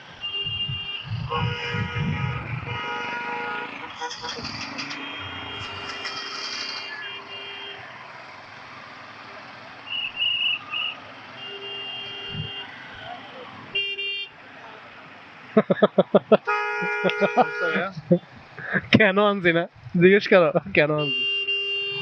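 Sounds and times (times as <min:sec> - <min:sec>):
road traffic: 0:00.0 - 0:22.0
vehicle horn: 0:00.2 - 0:07.9, 0:11.4 - 0:13.1, 0:13.7 - 0:14.3, 0:16.5 - 0:17.8, 0:21.0 - 0:22.0.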